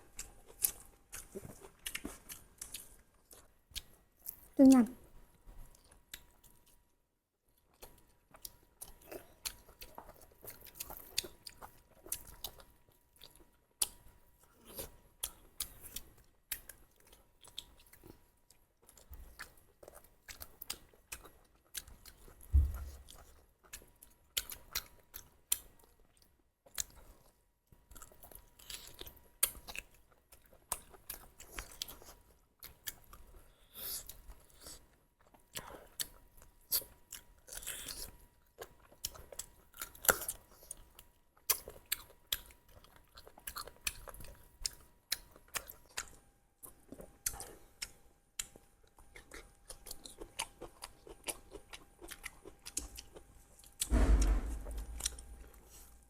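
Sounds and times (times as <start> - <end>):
chewing and crunching: 0.0 - 4.6, 5.3 - 6.9, 7.5 - 53.9
dull thump: 22.5 - 23.1, 53.9 - 55.5.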